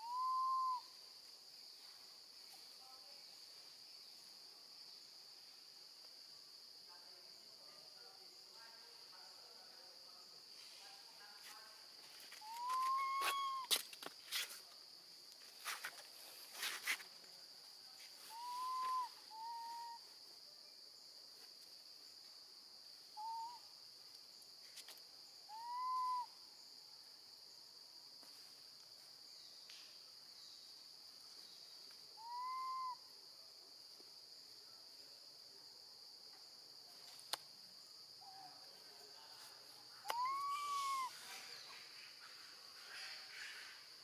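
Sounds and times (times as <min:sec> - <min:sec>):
baby monkey whistle-like cries: 0:00.0 - 0:00.8, 0:12.4 - 0:13.7, 0:18.3 - 0:20.0, 0:25.5 - 0:26.3, 0:32.2 - 0:33.0, 0:40.1 - 0:41.2
high insect drone: 0:00.0 - 0:44.0.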